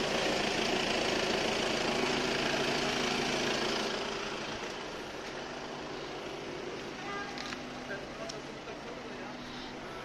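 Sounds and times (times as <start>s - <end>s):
diesel engine idling: 0.0s - 10.0s.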